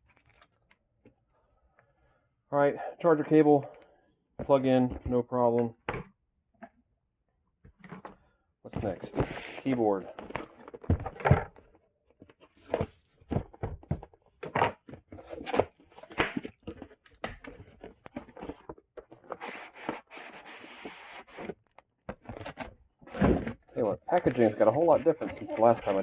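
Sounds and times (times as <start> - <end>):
packaging tearing: 0.0 - 0.6.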